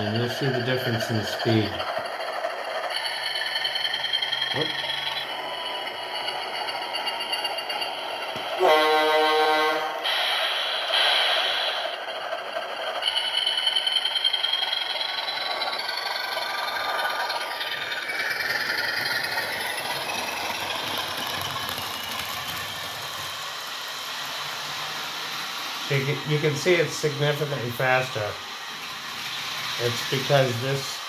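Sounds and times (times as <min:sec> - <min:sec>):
model train clatter on track: 0:00.0 - 0:08.6, 0:10.4 - 0:31.0
model locomotive horn: 0:08.6 - 0:10.1
rising high tone: 0:08.6 - 0:10.1.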